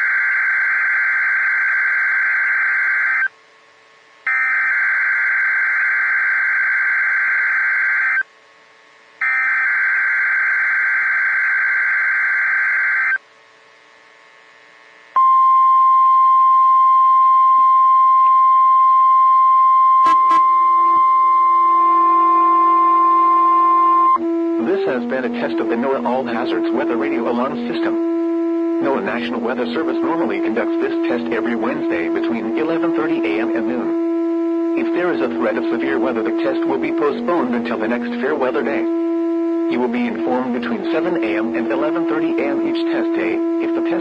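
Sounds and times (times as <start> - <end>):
steady warning alarm tone: 0.0 - 3.3, 4.2 - 8.3, 9.2 - 13.2, 15.2 - 44.0
buzzy digital data screech: 28.8 - 34.0, 39.7 - 44.0.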